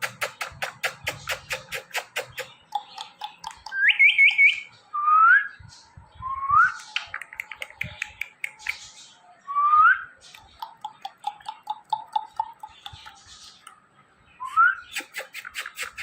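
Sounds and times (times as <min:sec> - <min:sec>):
parrot rapid clicking: 0:00.0 - 0:04.2, 0:07.1 - 0:08.8, 0:10.4 - 0:13.2.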